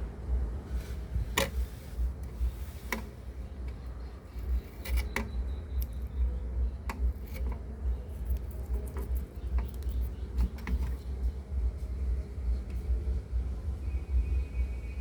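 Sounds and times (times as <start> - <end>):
low steady rumble: 0.0 - 15.0
light clicks and taps: 6.8 - 11.0.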